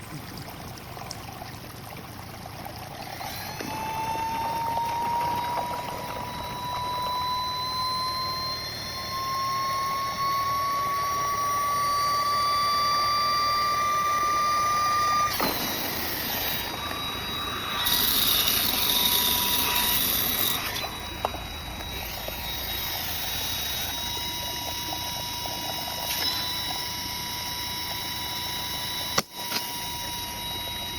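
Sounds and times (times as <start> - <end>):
vacuum cleaner motor whining: 3.0 - 30.9.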